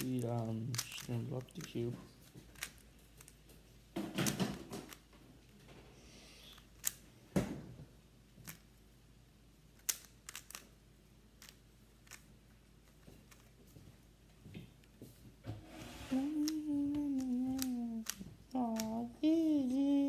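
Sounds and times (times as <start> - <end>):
puzzle cube clicking as turned: 0.0 - 1.9, 2.5 - 3.4, 6.5 - 7.0, 9.7 - 13.5, 16.3 - 19.1.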